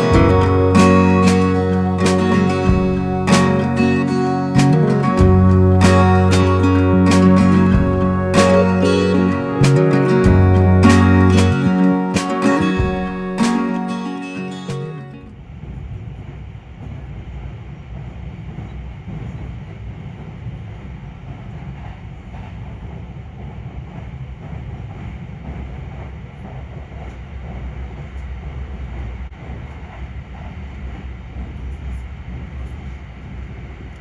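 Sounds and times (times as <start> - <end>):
vehicle engine rumbling: 0.0 - 13.6.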